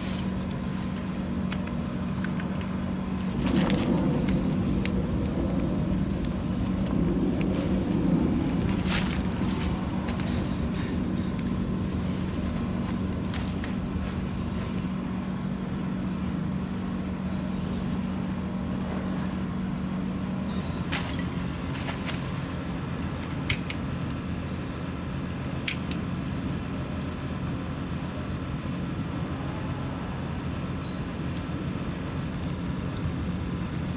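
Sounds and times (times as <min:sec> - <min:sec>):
steady low hum: 0:00.0 - 0:33.9
campfire crackling and popping: 0:00.4 - 0:10.4.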